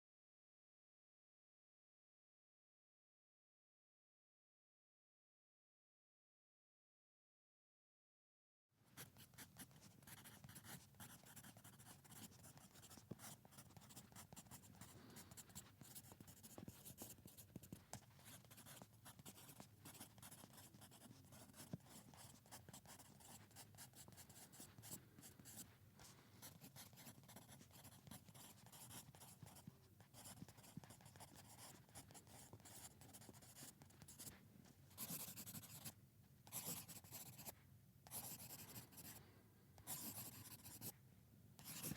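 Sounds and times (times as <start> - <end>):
pencil writing on paper: 9.0 - 25.7, 26.4 - 34.3, 35.0 - 37.5, 38.1 - 39.2, 39.8 - 40.9, 41.6 - 41.9.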